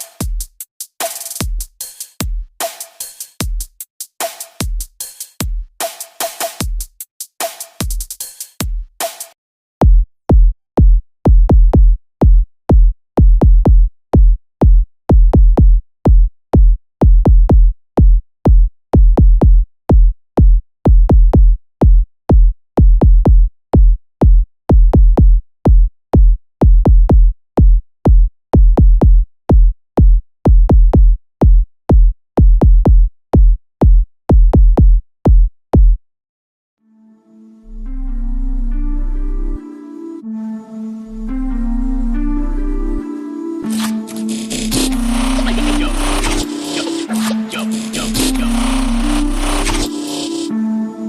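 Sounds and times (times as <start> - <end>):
drum machine kick drum: 0.0 - 36.0.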